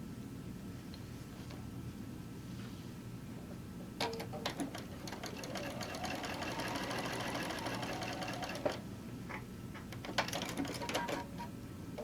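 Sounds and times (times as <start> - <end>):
sewing machine stitching: 4.6 - 8.8.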